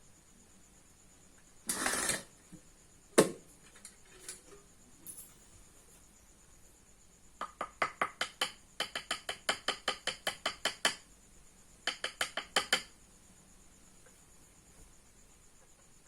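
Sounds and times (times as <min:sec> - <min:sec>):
rapid sharp clicking taps: 0:07.4 - 0:11.0, 0:11.8 - 0:12.9.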